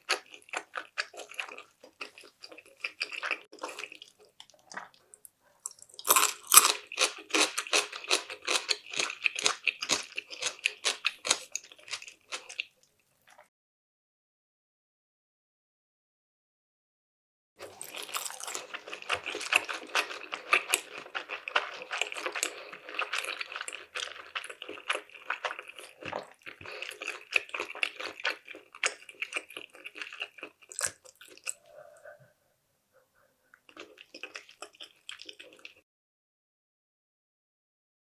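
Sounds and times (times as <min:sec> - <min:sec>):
wet chewing and smacking: 0:00.0 - 0:12.7, 0:17.6 - 0:32.2, 0:33.2 - 0:35.8.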